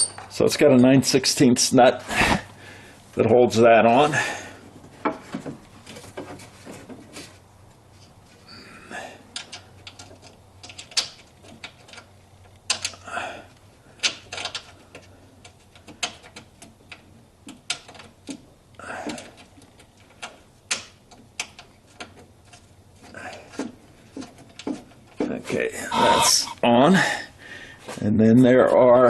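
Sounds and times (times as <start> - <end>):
metal tapping and clinking: 0.0 - 0.4.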